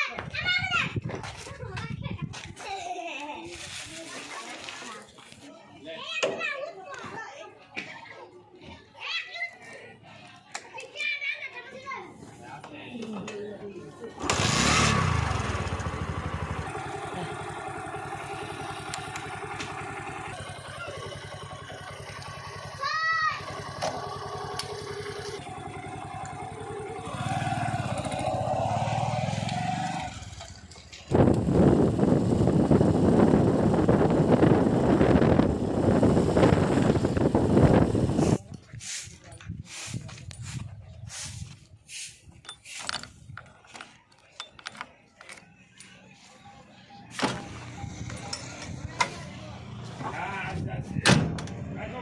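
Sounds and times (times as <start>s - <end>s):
heavy diesel engine running: 14.2s - 38.4s, 47.1s - 50.6s.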